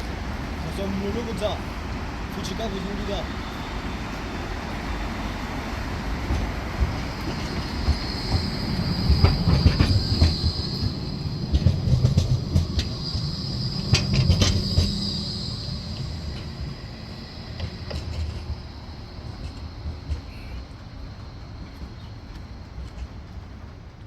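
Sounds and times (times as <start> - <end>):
tram rumbling on rails: 0.0 - 24.0
high wheel squeal: 0.7 - 21.1
wheels clicking over rail joints: 5.9 - 24.0.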